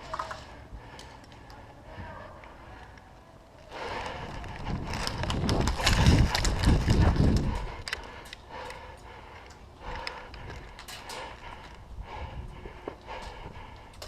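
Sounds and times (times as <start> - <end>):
hurried footsteps: 3.7 - 14.0
gear knocking and rustling: 3.8 - 11.8.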